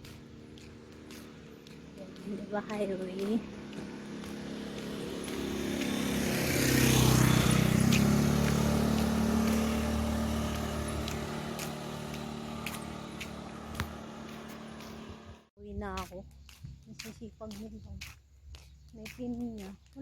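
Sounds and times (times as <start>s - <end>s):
vehicle driving past: 3.2s - 15.5s.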